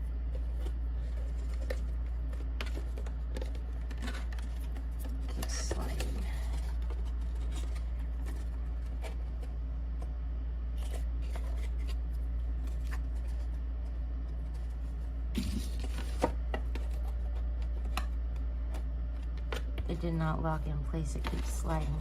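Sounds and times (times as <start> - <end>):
steady low hum: 0.0 - 22.0
paper rustle: 0.3 - 9.5, 10.8 - 13.6.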